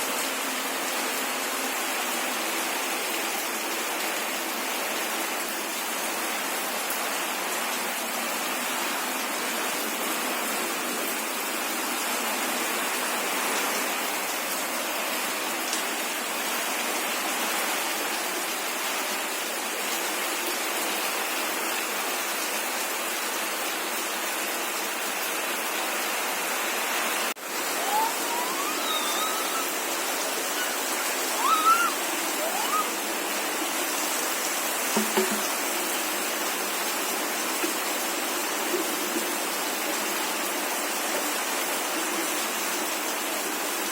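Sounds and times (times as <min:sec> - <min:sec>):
heavy rain falling: 0:00.0 - 0:43.9
young child crying out: 0:27.6 - 0:33.0.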